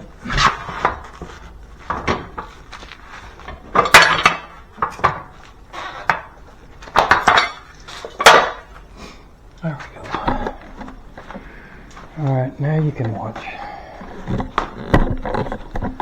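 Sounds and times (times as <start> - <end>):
metal clattering and scraping: 0.0 - 8.8
loud metal clanks: 3.6 - 5.2.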